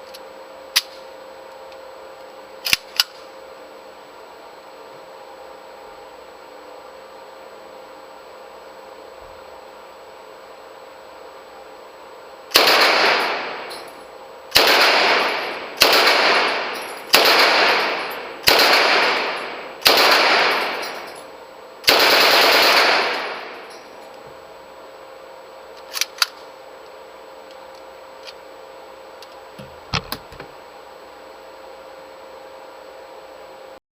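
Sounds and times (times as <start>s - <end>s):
submachine gun bursts with echo: 12.5s - 13.8s, 14.5s - 21.2s, 21.8s - 23.7s.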